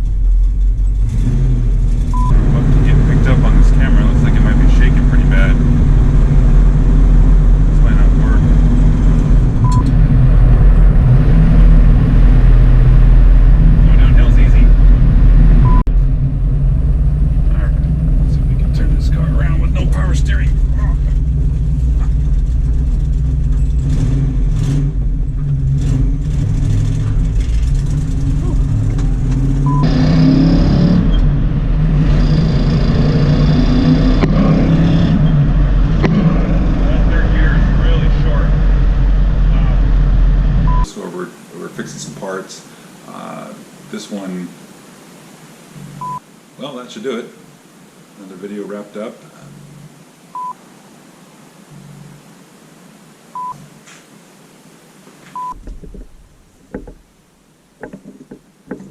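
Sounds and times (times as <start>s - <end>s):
low rumbles: 0.0s - 44.6s, 45.6s - 50.6s, 55.4s - 58.9s
car engine drone: 0.0s - 58.9s
high electronic beep: 2.2s - 2.4s, 9.6s - 9.9s, 46.0s - 46.2s, 53.4s - 53.6s, 55.4s - 55.6s
faint knocks: 55.5s - 57.1s, 57.8s - 58.9s.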